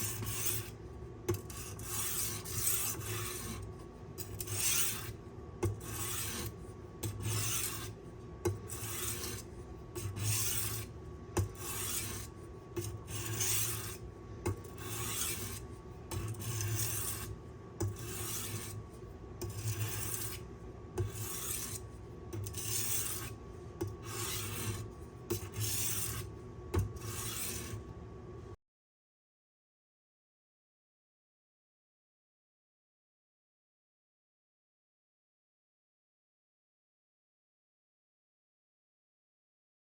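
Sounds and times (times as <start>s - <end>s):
knife scraping on sharpening stone: 0.0s - 18.8s, 19.4s - 27.8s.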